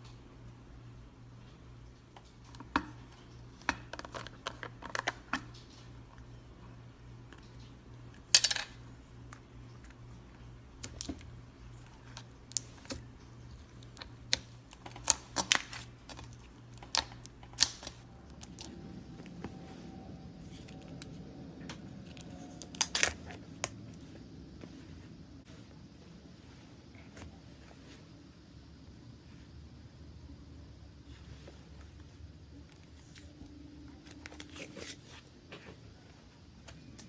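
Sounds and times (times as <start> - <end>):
low steady hum: 0.0 - 37.0
slime crackling and popping: 11.8 - 19.4, 22.0 - 23.8.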